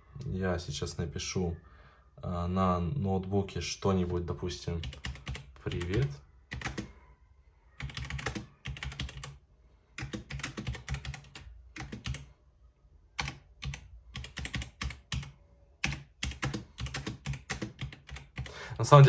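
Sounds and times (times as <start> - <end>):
mechanical keyboard typing: 4.8 - 6.9, 7.8 - 9.4, 10.0 - 12.3, 13.2 - 18.5.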